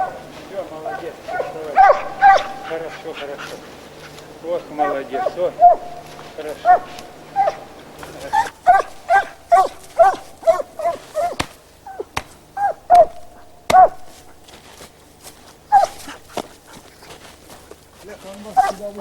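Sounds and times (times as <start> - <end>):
dog yelping barks: 0.0 - 3.0, 4.8 - 14.4, 15.7 - 17.2, 18.6 - 19.0.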